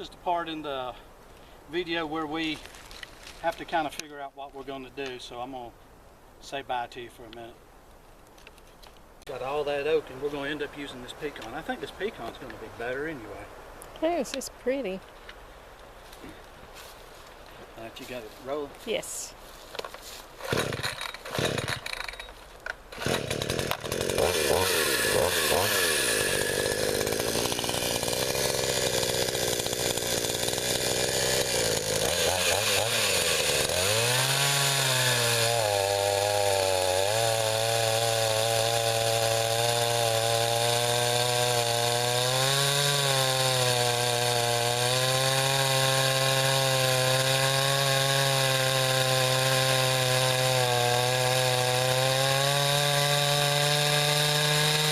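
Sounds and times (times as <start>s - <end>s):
chainsaw cutting log: 20.4s - 54.9s.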